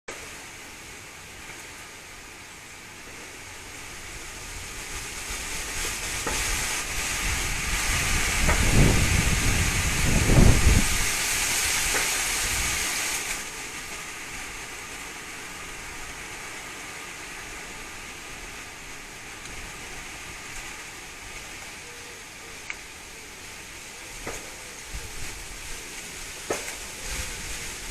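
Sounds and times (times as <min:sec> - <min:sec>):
wind rushing through foliage: 0:00.1 - 0:27.9
wind buffeting microphone: 0:04.0 - 0:12.9.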